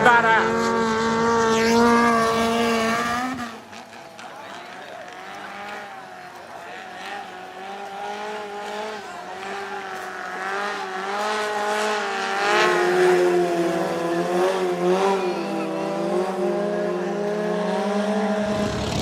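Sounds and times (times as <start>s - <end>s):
boat engine running: 17.5s - 19.0s.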